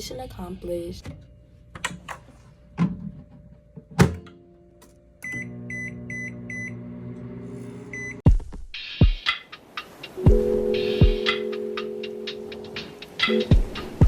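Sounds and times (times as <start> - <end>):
microwave oven humming: 1.1 - 8.2
clicks and knocks: 1.8 - 5.0
microwave short high beeps: 5.2 - 6.8, 7.9 - 8.2.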